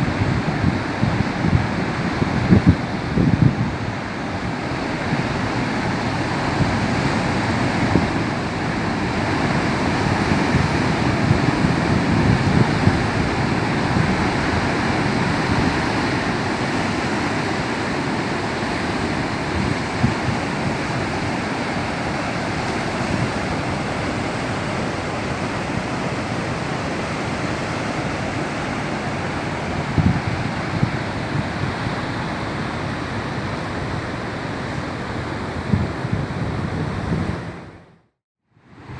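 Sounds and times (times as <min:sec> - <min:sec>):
sea surf breaking: 0:00.0 - 0:37.8
wind buffeting microphone: 0:00.0 - 0:38.0.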